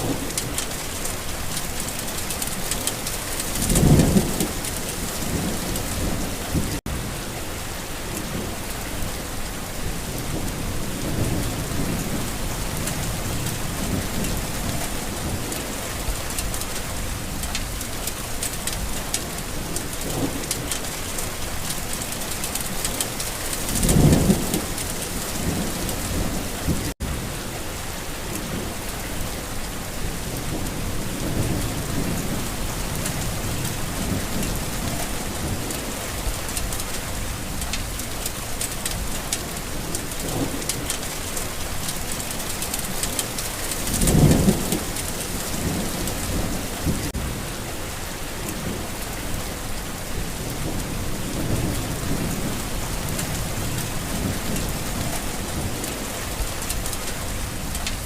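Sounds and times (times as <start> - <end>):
thunder rumbling: 0.0 - 7.1, 29.9 - 47.6
steady rain falling: 0.0 - 58.0.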